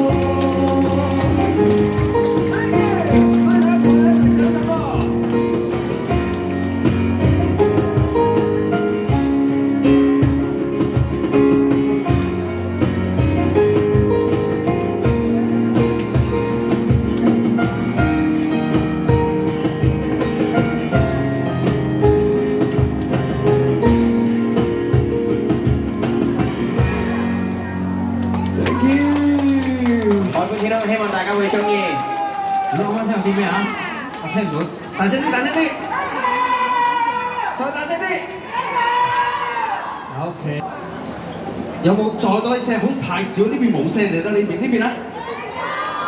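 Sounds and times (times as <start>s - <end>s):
drum kit beat: 0.0s - 27.8s
keyboard notes: 0.0s - 30.1s.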